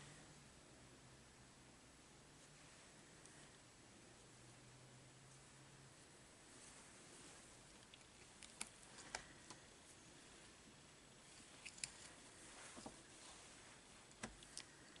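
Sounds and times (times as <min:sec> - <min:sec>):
faint steady hiss: 0:00.0 - 0:15.0
yarn rustling: 0:05.3 - 0:15.0.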